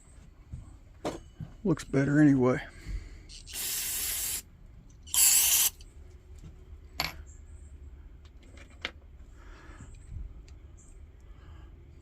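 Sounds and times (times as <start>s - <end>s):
short spray hiss: 3.6s - 4.4s, 5.1s - 5.8s.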